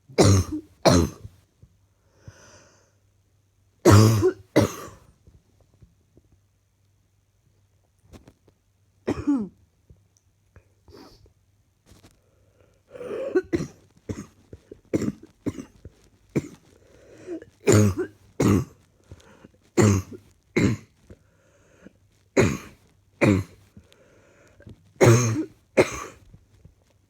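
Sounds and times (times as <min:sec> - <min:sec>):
person coughing: 0:00.2 - 0:01.3, 0:03.9 - 0:05.0, 0:09.1 - 0:09.6, 0:12.9 - 0:14.4, 0:15.0 - 0:15.8, 0:16.4 - 0:16.6, 0:17.2 - 0:18.8, 0:19.8 - 0:20.9, 0:22.4 - 0:23.6, 0:25.0 - 0:26.2.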